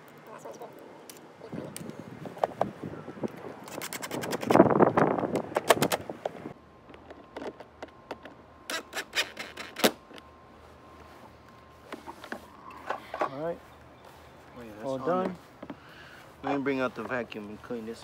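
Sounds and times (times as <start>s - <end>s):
faint steady tone: 10.0s - 18.0s.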